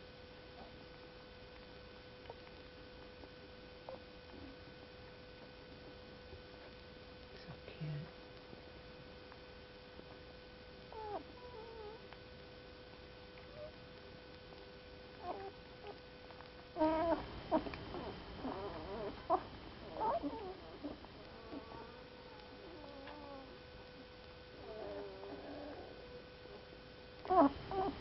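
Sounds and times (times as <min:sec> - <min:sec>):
young animals squeaking: 0:16.8 - 0:22.0, 0:27.2 - 0:28.0.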